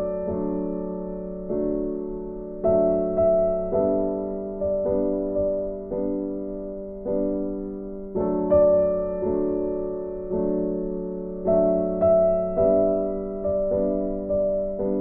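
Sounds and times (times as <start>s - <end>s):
gentle piano chords: 0.0s - 15.0s.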